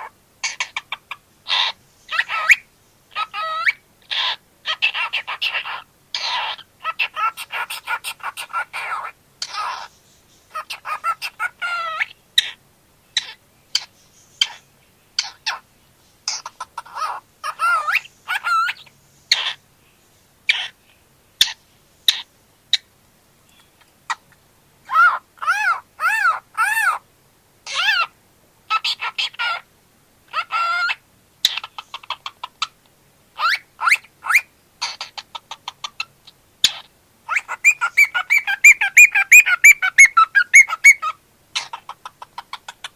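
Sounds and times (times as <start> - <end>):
cockatiel calling: 0.0 - 15.6, 16.2 - 19.6, 20.5 - 20.8, 21.4 - 22.9, 23.6 - 27.0, 27.6 - 29.7, 30.3 - 32.8, 33.4 - 42.9
cockatiel sharp chirps: 33.4 - 42.8.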